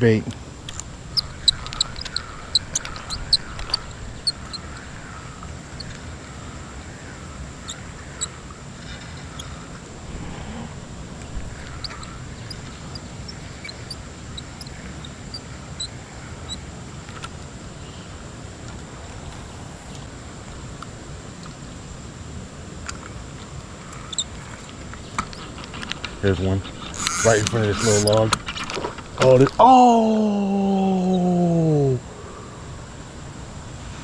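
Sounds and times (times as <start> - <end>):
bird chirps: 0.7 - 9.8, 11.2 - 16.7.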